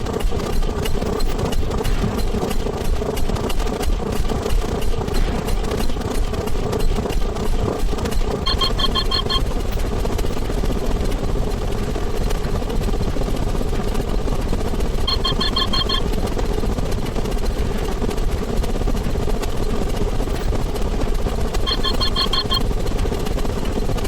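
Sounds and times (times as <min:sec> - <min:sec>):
short high beeps: 0:08.4 - 0:09.4, 0:15.1 - 0:16.0, 0:21.7 - 0:22.6.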